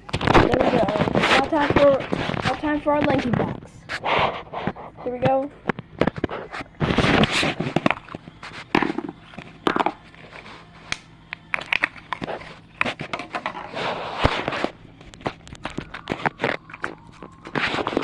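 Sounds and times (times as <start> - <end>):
packaging crinkling: 5.8 - 18.0.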